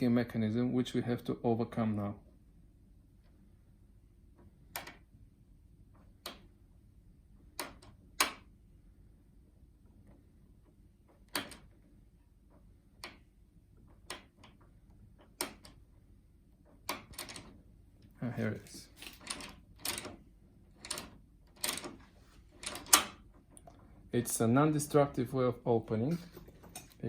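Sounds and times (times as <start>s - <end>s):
metallic clicks of lock picking: 16.9s - 17.5s, 19.1s - 20.2s, 20.8s - 21.9s, 22.6s - 23.7s.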